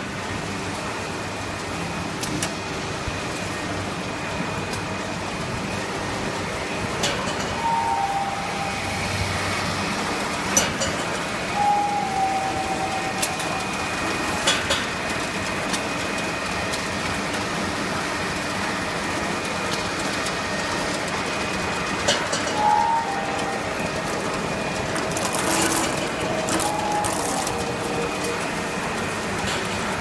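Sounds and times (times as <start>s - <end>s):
constant high whine: 0.0s - 30.0s
frying line mechanical hum: 0.0s - 30.0s
brief machine squeal: 7.1s - 9.7s, 11.5s - 14.0s, 22.4s - 23.8s, 25.4s - 27.7s.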